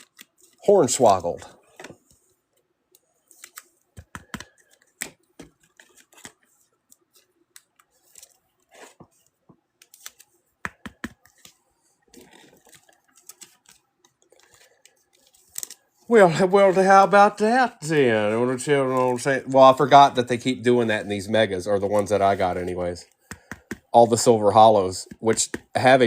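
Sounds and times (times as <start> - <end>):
trading cards clicking and tapping: 3.4 - 7.9, 9.0 - 11.6, 23.1 - 26.0.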